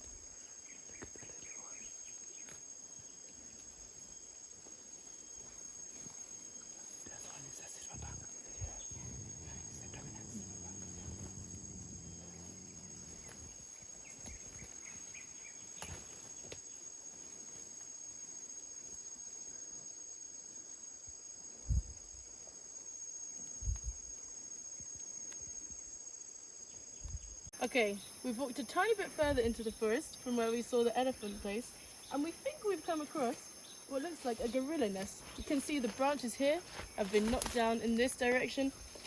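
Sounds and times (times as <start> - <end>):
high-pitched insect drone: 5.2 - 16.3.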